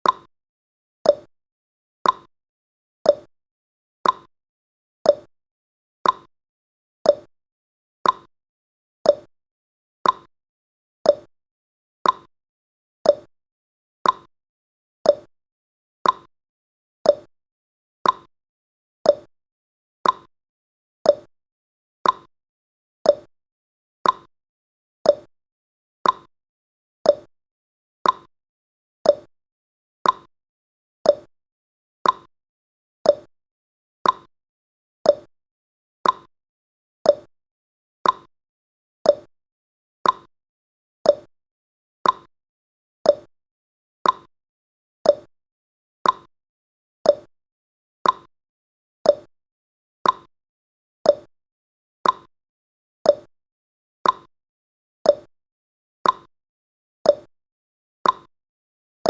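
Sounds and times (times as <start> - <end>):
timer ticking clicks: 0.0 - 0.3, 1.0 - 1.3, 2.0 - 2.3, 3.1 - 3.3, 4.0 - 4.3, 5.1 - 5.3, 6.0 - 6.3, 7.0 - 7.3, 8.0 - 8.3, 9.0 - 9.3, 10.0 - 10.3, 11.0 - 11.3, 12.0 - 12.3, 13.0 - 13.3, 14.0 - 14.3, 15.0 - 15.3, 16.0 - 16.3, 17.0 - 17.3, 18.0 - 18.3, 19.0 - 19.3, 20.0 - 20.3, 21.0 - 21.3, 22.0 - 22.3, 23.0 - 23.3, 24.0 - 24.3, 25.0 - 25.3, 26.0 - 26.3, 27.0 - 27.3, 28.0 - 28.3, 29.0 - 29.3, 30.0 - 30.3, 31.0 - 31.3, 32.0 - 32.3, 33.0 - 33.3, 34.0 - 34.3, 35.0 - 35.3, 36.0 - 36.3, 37.0 - 37.3, 38.0 - 38.3, 39.0 - 39.3, 40.0 - 40.3, 41.0 - 41.3, 42.0 - 42.3, 43.0 - 43.3, 44.0 - 44.3, 45.0 - 45.3, 46.0 - 46.3, 47.0 - 47.3, 48.0 - 48.3, 49.0 - 49.3, 50.0 - 50.3, 51.0 - 51.3, 52.0 - 52.3, 53.1 - 53.3, 54.0 - 54.3, 55.1 - 55.3, 56.0 - 56.3, 57.1 - 57.3, 58.0 - 58.3.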